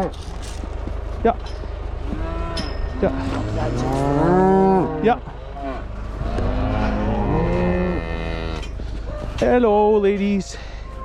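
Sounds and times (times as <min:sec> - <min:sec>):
cattle mooing: 0:02.0 - 0:09.4.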